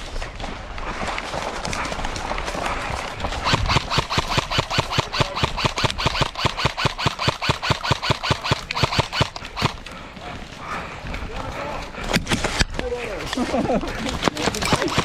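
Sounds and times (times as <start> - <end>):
running footsteps on ground: 0.0 - 3.8, 8.4 - 15.0
gear rattling: 14.2 - 15.0.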